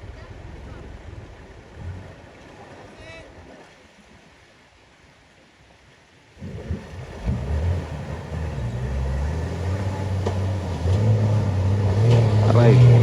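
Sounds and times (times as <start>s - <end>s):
vehicle engine under load: 6.4s - 13.0s.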